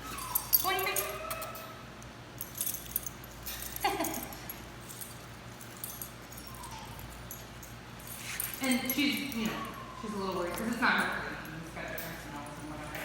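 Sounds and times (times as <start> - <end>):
dog whining: 0.0 - 1.9, 6.1 - 11.3.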